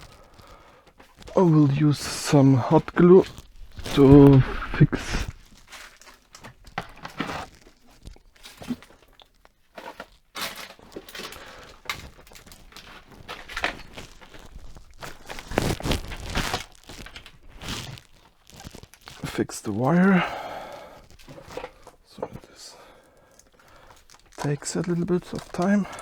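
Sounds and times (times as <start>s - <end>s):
hands working a hot glue gun: 23.4s - 26.0s.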